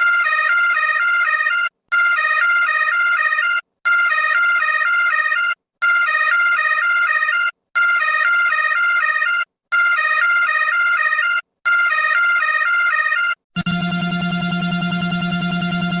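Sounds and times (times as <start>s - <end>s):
high electronic alarm beeps: 13.6s - 16.0s.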